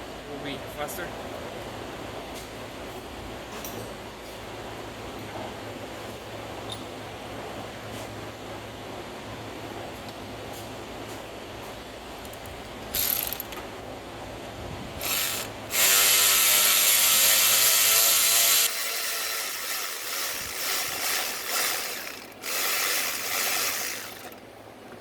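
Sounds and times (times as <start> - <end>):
ratchet spinning: 13.0 - 13.6, 15.0 - 24.4.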